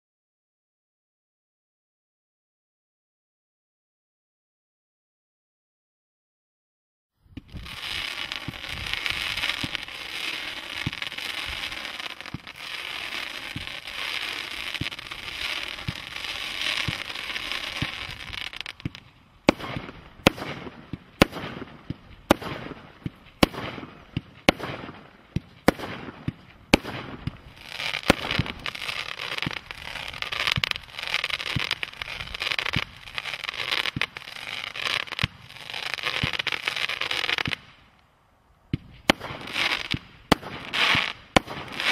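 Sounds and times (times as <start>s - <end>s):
firework crackling: 7.3s - 38.0s, 38.7s - 41.9s
firework bangs: 7.4s - 37.8s, 38.7s - 41.9s.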